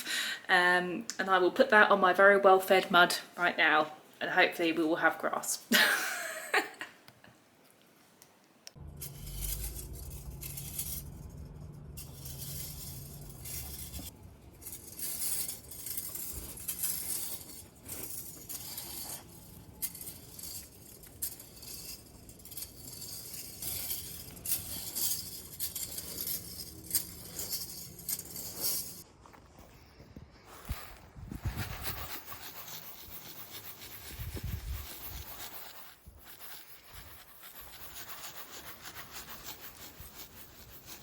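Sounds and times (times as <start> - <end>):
low steady hum: 8.7 - 29.4
seed rattling in cardboard box: 30.5 - 41.0.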